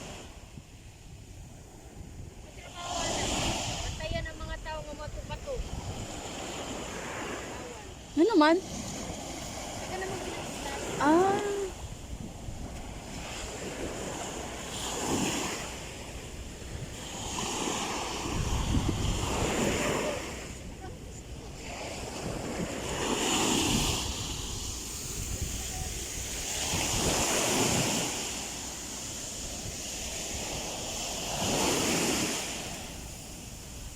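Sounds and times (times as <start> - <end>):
ocean waves breaking: 0.0 - 33.9
wind rumbling on microphone: 0.0 - 33.9.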